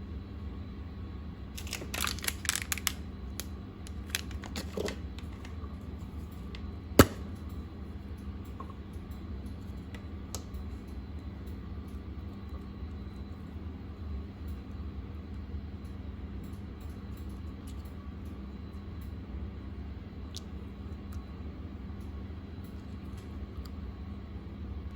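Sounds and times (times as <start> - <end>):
steady low hum: 0.0 - 24.9.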